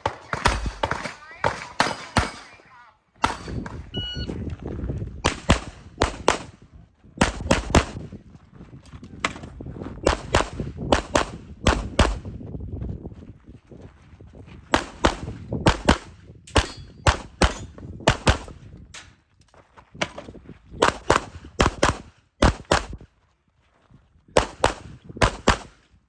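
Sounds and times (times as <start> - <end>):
pistol shots: 0.0 - 2.6, 3.2 - 3.8, 5.2 - 6.6, 7.2 - 8.0, 10.0 - 12.3, 14.7 - 18.5, 20.8 - 22.9, 24.4 - 25.8.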